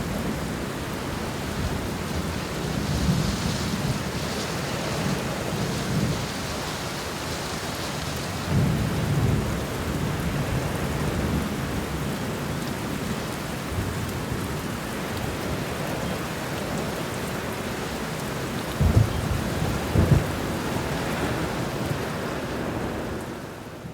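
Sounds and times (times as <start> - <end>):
steady rain: 0.0 - 23.9
loud thunder claps: 18.7 - 21.7
rolling thunder: 18.7 - 22.1.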